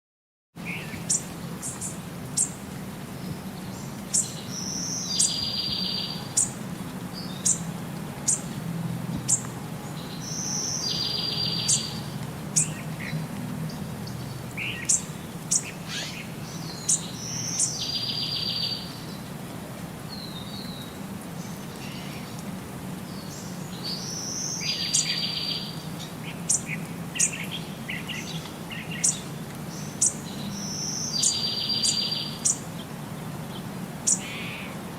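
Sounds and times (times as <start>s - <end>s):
bird song with buzzing trill: 3.2s - 8.5s, 9.2s - 19.2s, 23.1s - 34.8s.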